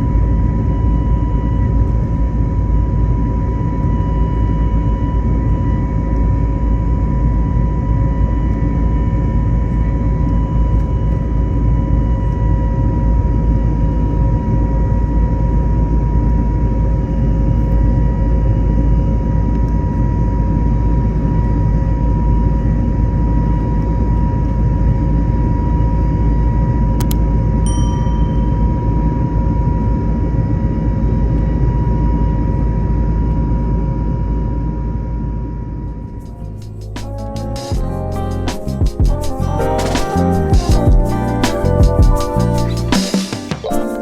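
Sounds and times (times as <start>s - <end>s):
thin steady whine: 0.0s - 44.0s.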